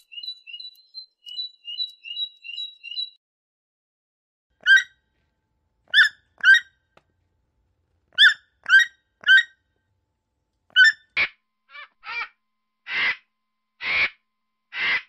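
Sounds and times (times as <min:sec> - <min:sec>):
animal squeaky calls: 0:04.6 - 0:05.0, 0:05.9 - 0:06.7, 0:08.2 - 0:09.6, 0:10.7 - 0:13.2.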